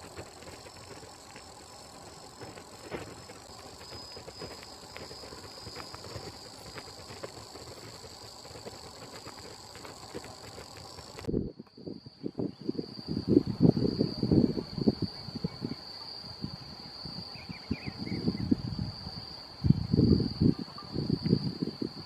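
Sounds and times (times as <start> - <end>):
small clicks and rustles: 0.0 - 11.8
insects droning: 0.0 - 22.0.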